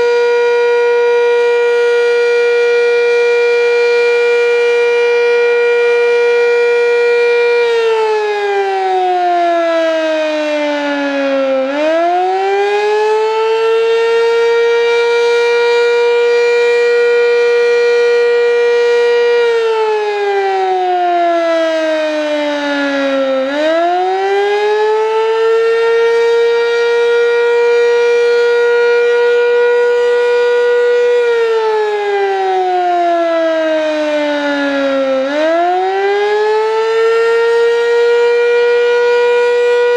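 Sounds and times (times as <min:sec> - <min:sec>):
warning siren howling: 0:00.0 - 0:39.9.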